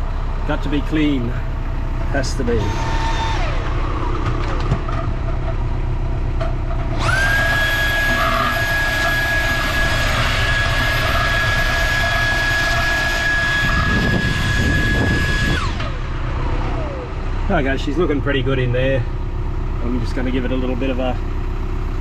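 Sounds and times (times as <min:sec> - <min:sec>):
low engine rumble: 0:00.0 - 0:08.6, 0:13.6 - 0:22.0
high-pitched rotary buffing tool whine: 0:02.2 - 0:05.1, 0:06.8 - 0:17.2.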